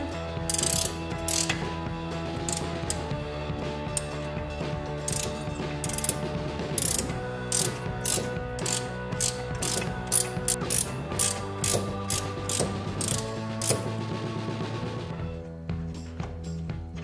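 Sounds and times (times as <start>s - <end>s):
background music with chords: 0.0s - 17.0s
ratchet wrench clicking: 0.5s - 1.7s, 2.4s - 3.2s, 3.9s - 4.3s, 5.0s - 13.9s.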